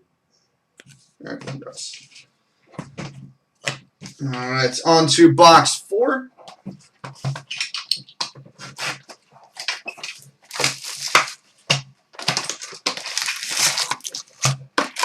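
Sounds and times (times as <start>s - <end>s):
cardboard tearing: 8.6s - 11.4s, 12.2s - 15.0s
plastic wrap crinkling: 8.6s - 15.0s.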